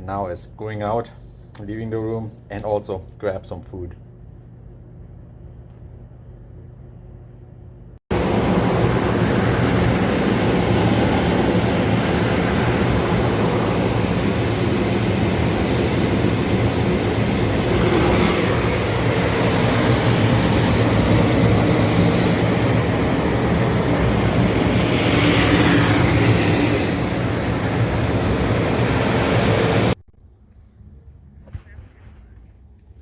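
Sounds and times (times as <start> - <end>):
vehicle rumble with hiss: 8.1 - 30.0.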